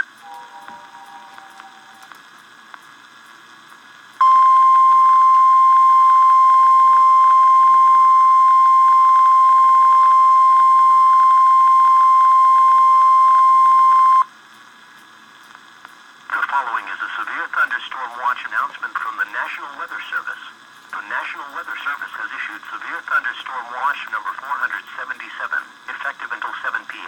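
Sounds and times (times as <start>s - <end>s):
steady high warning beep: 4.2s - 14.3s.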